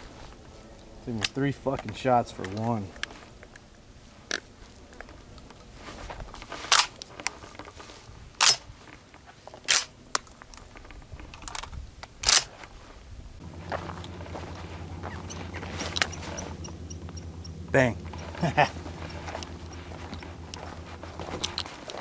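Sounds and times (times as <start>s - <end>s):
sharp cracks or clicks: 8.4s - 8.6s, 9.7s - 9.9s, 11.4s - 12.5s
low steady hum: 13.2s - 22.0s
faint ticks: 13.8s - 18.4s.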